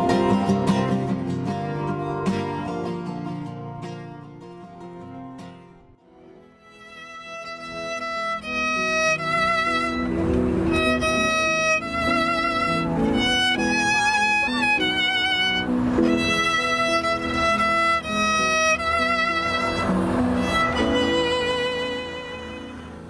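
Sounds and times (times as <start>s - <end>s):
violin melody with vibrato: 6.1s - 23.0s.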